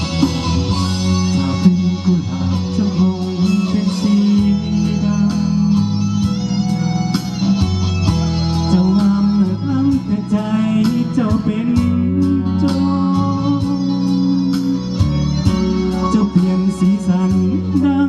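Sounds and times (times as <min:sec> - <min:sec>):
live band playing pop: 0:00.0 - 0:18.0.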